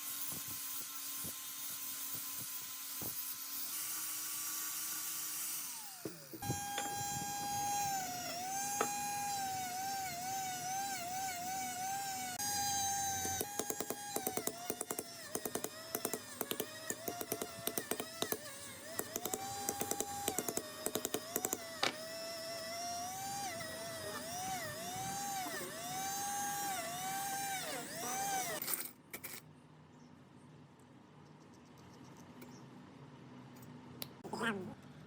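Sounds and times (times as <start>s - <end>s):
power tool motor whining: 0.0s - 28.6s.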